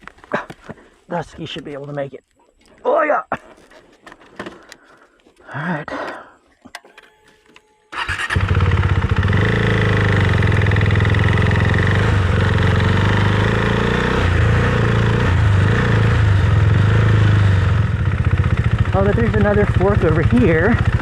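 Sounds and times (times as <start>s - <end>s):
motorcycle engine running: 8.0s - 21.0s.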